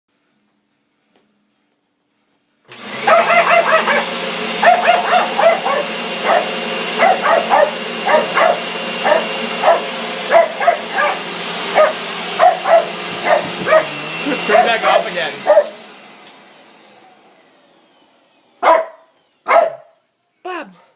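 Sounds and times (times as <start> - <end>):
vacuum cleaner running: 2.6 - 19.8
dog barking: 3.0 - 15.8, 18.6 - 20.0.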